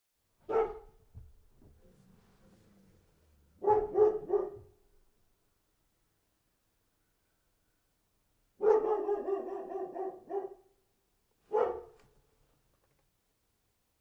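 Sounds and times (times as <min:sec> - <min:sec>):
dog barking: 0:00.4 - 0:01.0, 0:03.6 - 0:04.8, 0:08.6 - 0:10.8, 0:11.5 - 0:12.0.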